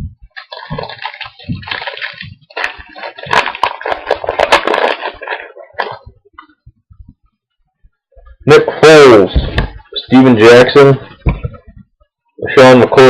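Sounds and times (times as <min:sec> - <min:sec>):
cards rustling: 0:00.4 - 0:06.0
foil wrapper tearing and crinkling: 0:00.4 - 0:06.1.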